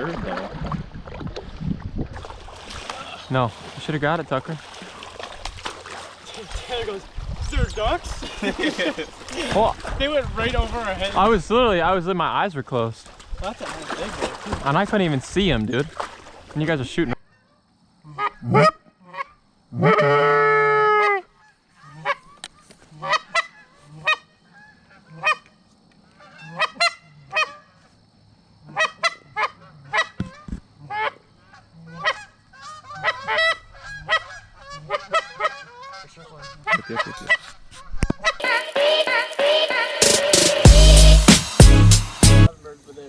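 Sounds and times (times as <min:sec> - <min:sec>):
geese honking: 0:18.1 - 0:22.4, 0:23.0 - 0:25.5, 0:26.1 - 0:27.8, 0:28.7 - 0:41.3.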